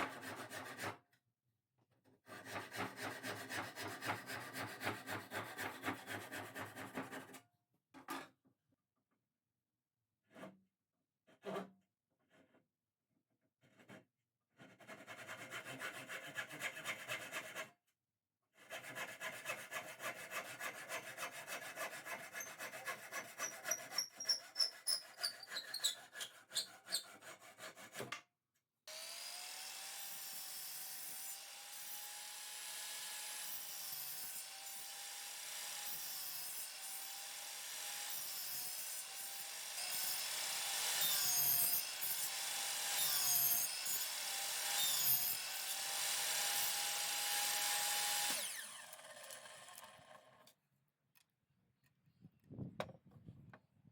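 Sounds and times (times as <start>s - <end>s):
hand saw cutting wood: 0.0s - 1.0s, 2.2s - 7.4s, 14.6s - 17.8s, 18.6s - 28.3s, 28.9s - 50.6s.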